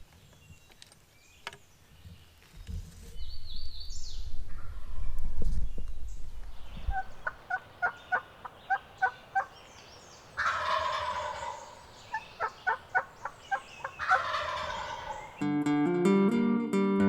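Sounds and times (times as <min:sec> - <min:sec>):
turkey gobble: 0:06.8 - 0:15.4
turkey yelps: 0:06.8 - 0:15.4.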